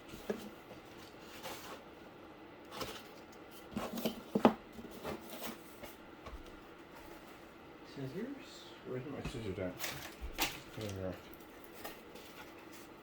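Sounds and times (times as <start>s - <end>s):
cardboard rustling: 0.0s - 2.0s, 2.7s - 7.3s, 9.8s - 13.0s.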